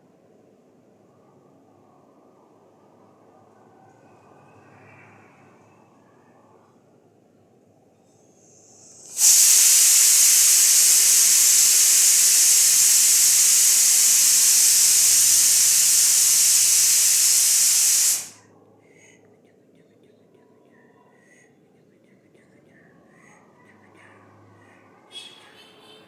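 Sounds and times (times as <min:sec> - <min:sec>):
loud steady hiss: 0:08.2 - 0:18.4.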